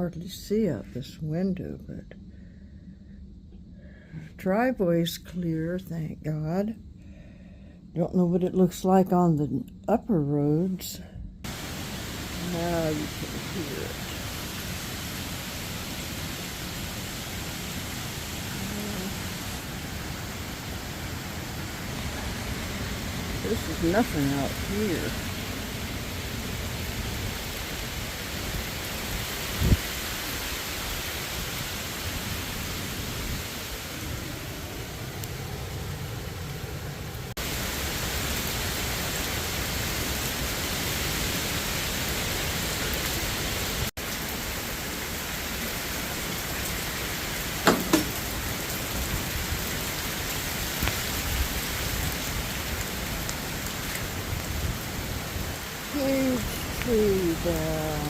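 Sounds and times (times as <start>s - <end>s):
hurricane wind and rain rushing: 11.4s - 58.0s
short knocks: 47.6s - 48.3s.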